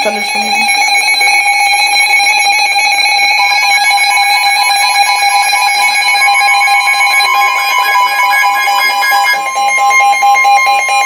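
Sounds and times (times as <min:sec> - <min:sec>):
two-tone electronic alarm: 0:00.0 - 0:11.0.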